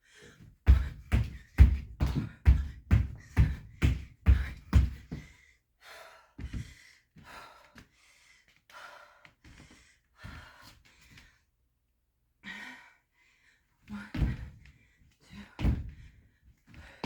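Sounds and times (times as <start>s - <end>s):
person panting: 0.0s - 10.8s
feet thudding on floor: 0.7s - 5.3s.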